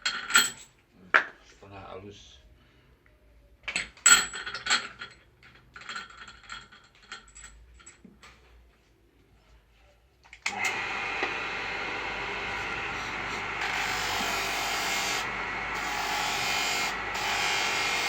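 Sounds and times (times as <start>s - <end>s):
light metallic clinks and knocks: 3.7s - 8.4s
electric motor running: 10.5s - 18.0s.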